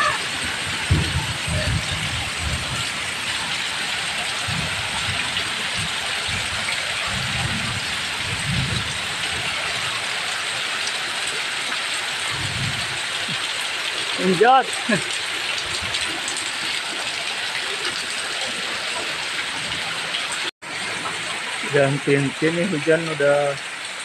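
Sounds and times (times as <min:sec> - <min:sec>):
low rumbles: 0:00.0 - 0:10.2, 0:12.2 - 0:14.1
heavy rain falling: 0:00.0 - 0:24.0.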